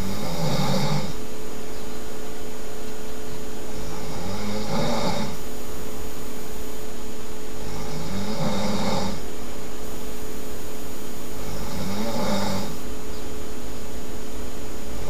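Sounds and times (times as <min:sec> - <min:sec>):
person snoring: 0:00.0 - 0:01.2, 0:03.7 - 0:05.4, 0:07.6 - 0:09.2, 0:11.4 - 0:12.8
steady background hum: 0:00.0 - 0:15.0.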